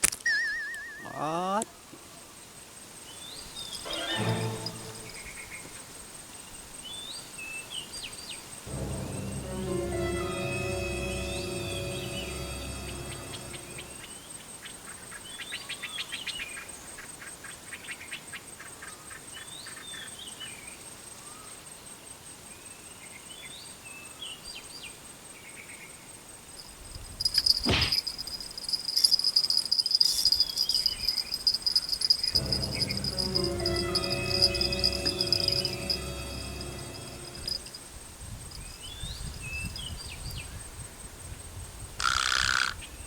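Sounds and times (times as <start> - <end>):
background music: 3.8 - 5.6, 8.7 - 14.2, 32.3 - 37.9
insects calling: 26.6 - 38.0, 42.0 - 42.9
high-pitched insect buzz: 27.0 - 38.0.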